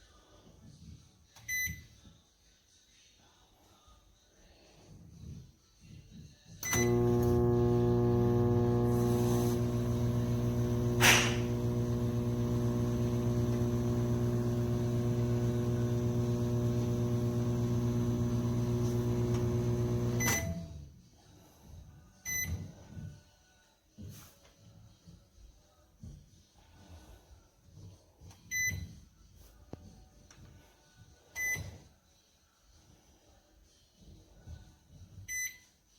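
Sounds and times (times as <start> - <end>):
microwave click: 6.6 - 20.6
microwave oven humming: 6.6 - 20.8.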